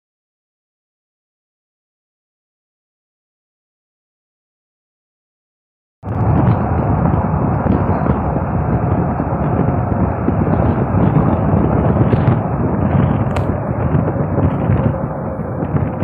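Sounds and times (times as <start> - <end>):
loud low rumbling: 6.0 - 16.0.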